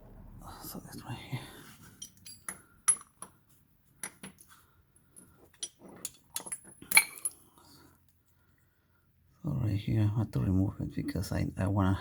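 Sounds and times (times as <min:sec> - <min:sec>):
metal tools clinking: 0:01.9 - 0:03.4, 0:04.0 - 0:07.5.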